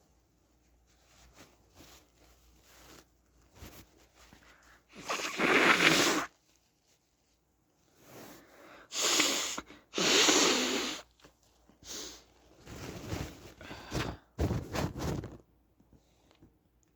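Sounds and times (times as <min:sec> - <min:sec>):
person blowing nose: 0:04.9 - 0:06.4, 0:08.9 - 0:11.1.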